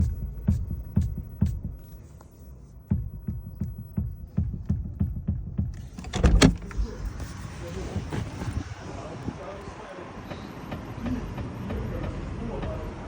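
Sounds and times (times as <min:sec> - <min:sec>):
low clunking knock: 0:02.9 - 0:06.9.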